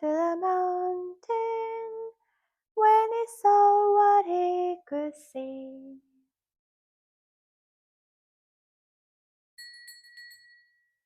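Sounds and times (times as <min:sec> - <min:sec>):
woman singing children's song: 0:00.0 - 0:02.2, 0:02.8 - 0:06.1.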